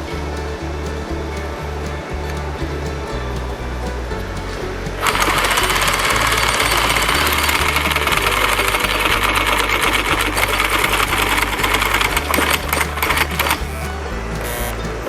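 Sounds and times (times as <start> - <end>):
background music: 0.0 - 15.0.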